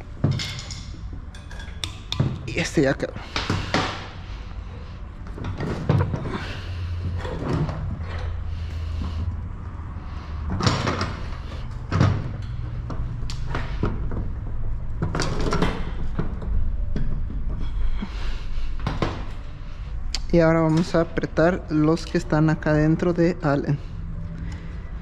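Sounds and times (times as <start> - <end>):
tools knocking and clattering: 0.0 - 2.8, 10.5 - 17.6
steady low hum: 0.0 - 25.0.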